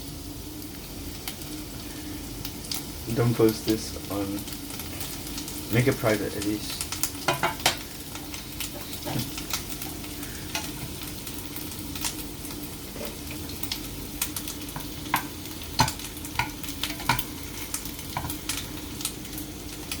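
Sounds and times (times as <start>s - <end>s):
meatballs sizzling in a pan: 0.0s - 20.0s
steady low hum: 0.0s - 20.0s
utensil tapping against pan: 7.3s - 7.8s, 14.8s - 17.3s, 18.1s - 18.4s.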